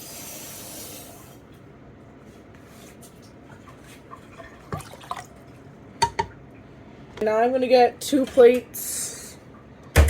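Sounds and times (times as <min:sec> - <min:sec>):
water pouring into a bowl: 0:04.4 - 0:05.4.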